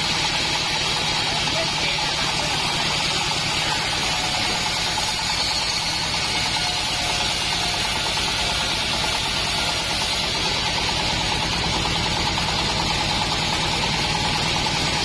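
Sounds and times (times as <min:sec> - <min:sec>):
bandsaw mill engine pulsing: 0:00.0 - 0:15.0.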